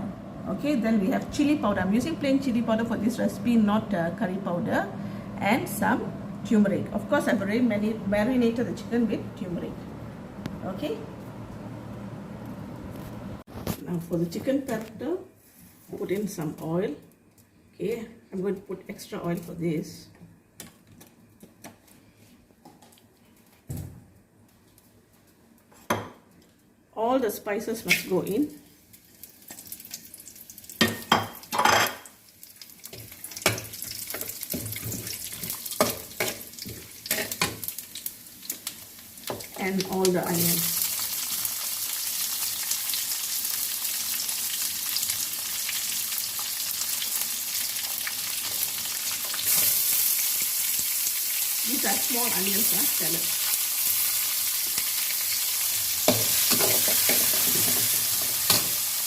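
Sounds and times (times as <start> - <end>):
food sizzling in hot oil: 27.8 - 59.0
oil crackling: 28.8 - 30.8, 32.2 - 58.9.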